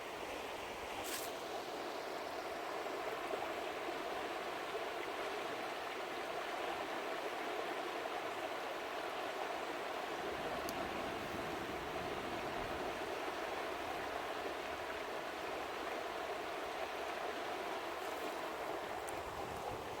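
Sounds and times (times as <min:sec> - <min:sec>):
river water rushing: 0:00.1 - 0:20.0.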